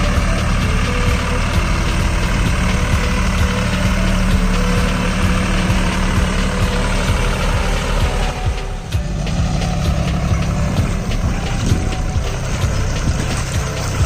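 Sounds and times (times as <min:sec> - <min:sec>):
tractor engine idling: 0:00.0 - 0:14.0.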